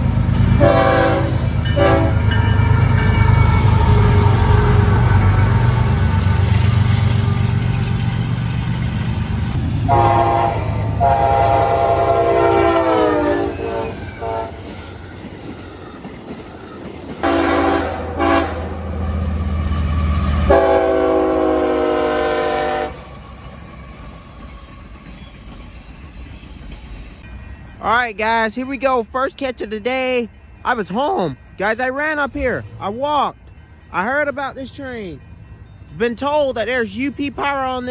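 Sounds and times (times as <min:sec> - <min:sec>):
diesel train rumble: 0:00.0 - 0:37.9
locomotive air horn blasts: 0:00.6 - 0:02.9, 0:09.8 - 0:14.8, 0:17.2 - 0:19.0, 0:20.5 - 0:23.1.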